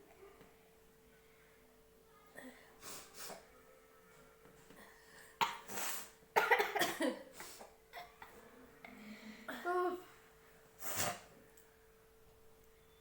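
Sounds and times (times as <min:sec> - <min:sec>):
faint breaths: 0:00.1 - 0:06.2, 0:08.4 - 0:11.3
person coughing: 0:06.4 - 0:08.4.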